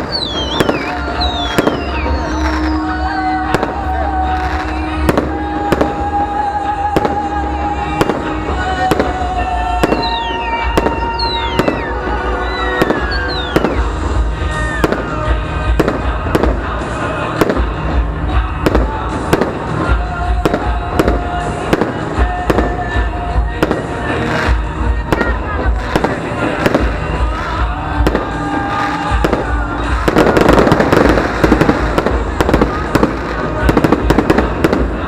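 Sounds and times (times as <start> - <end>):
falling firework whistles: 0.0 - 3.7, 9.8 - 15.2.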